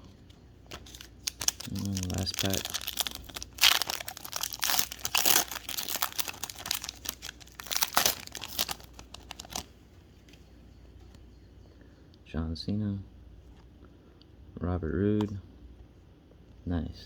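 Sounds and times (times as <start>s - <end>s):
plastic wrapper tearing and crinkling: 0.7s - 9.7s.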